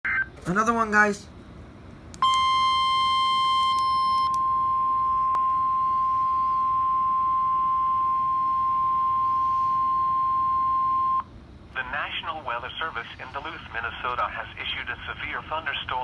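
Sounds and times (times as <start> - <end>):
steady alarm beep: 2.2 - 11.3.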